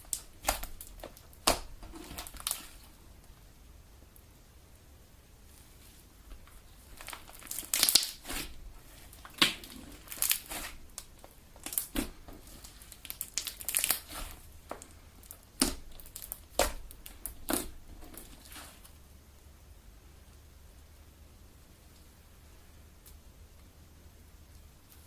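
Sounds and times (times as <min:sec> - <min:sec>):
slime crackling and popping: 0:00.0 - 0:03.0, 0:06.3 - 0:18.9.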